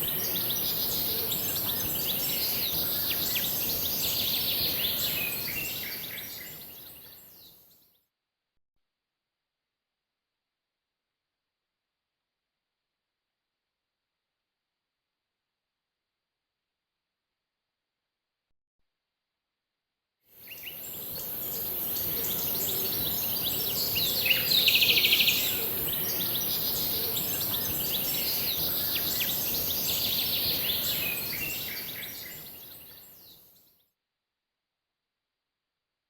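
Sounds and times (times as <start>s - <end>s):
steady high hiss: 20.4s - 33.0s
birds chirping: 20.5s - 33.2s.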